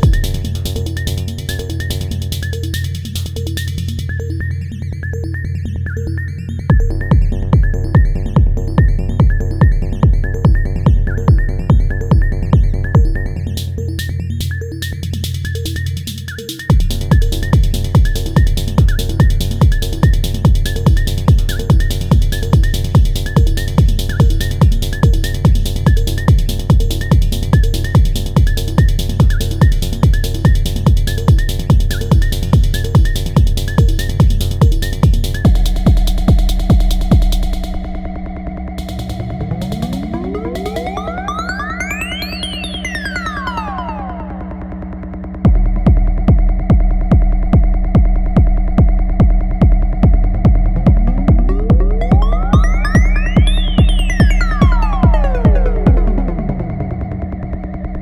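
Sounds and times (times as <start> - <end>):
four-on-the-floor kick drum: 0.0 - 0.6, 6.7 - 13.6, 16.7 - 38.0, 45.4 - 56.8
ticking hi-hats: 0.0 - 4.1, 6.7 - 38.2, 38.8 - 42.0, 45.5 - 56.8
steady bass: 0.0 - 58.0
short high synth notes: 38.8 - 44.7, 51.5 - 56.8.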